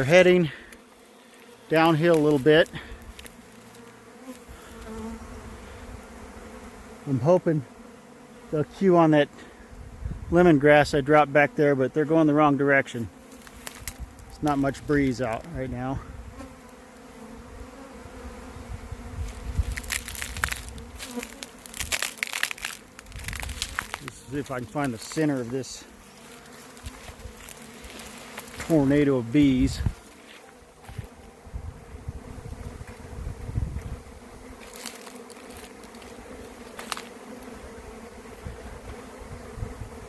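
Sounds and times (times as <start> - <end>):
brush crunching and crackling: 0.0 - 4.5, 13.2 - 15.6, 19.2 - 31.4, 34.6 - 37.5
bee swarm buzzing: 0.0 - 40.0
brief crackles: 19.7 - 24.9.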